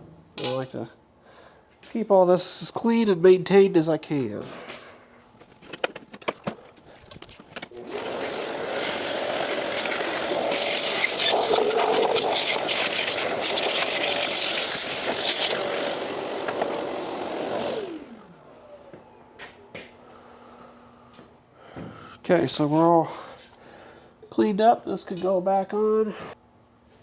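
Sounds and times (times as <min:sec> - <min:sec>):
shop vacuum running: 0:07.7 - 0:23.6.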